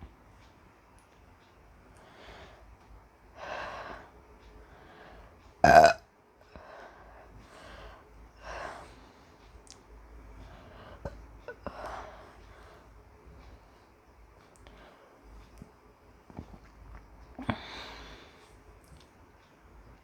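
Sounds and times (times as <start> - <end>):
woman burping: 5.6 - 6.0.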